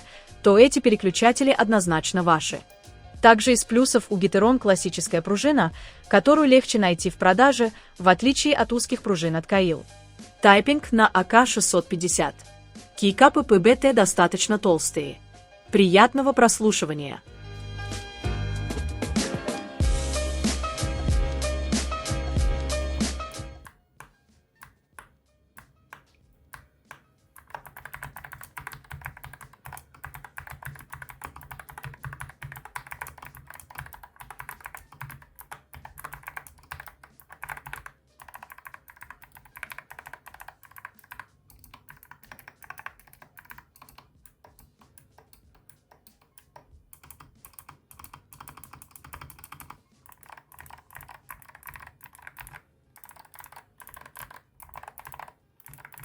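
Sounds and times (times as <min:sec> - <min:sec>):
clicky mechanical keyboard typing: 0:23.2 - 0:56.0.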